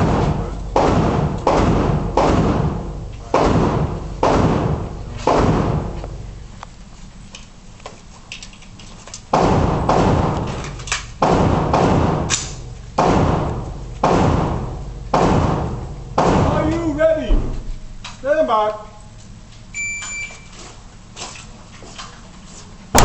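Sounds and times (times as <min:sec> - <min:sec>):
rifle shots echoing: 0:00.0 - 0:06.2, 0:09.3 - 0:16.7.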